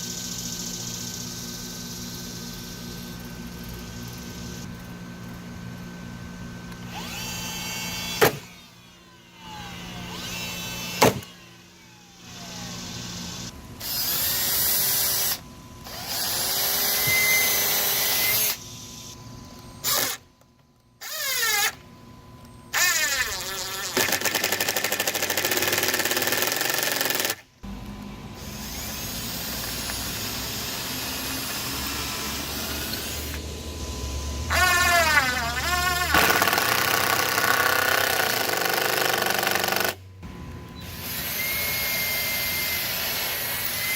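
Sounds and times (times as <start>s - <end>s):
power drill whining: 6.9s - 19.2s, 19.8s - 20.2s, 21.0s - 21.8s, 22.8s - 27.4s, 28.4s - 40.0s, 40.7s - 43.9s.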